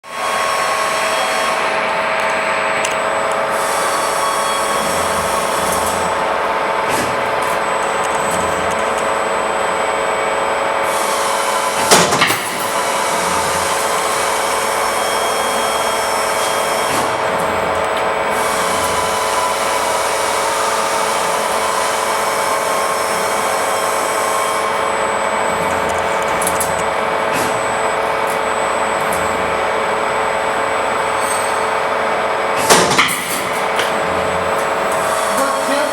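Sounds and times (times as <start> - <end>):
machine motor hum: 0.1 - 35.9
cyclic machine hissing: 0.2 - 30.1.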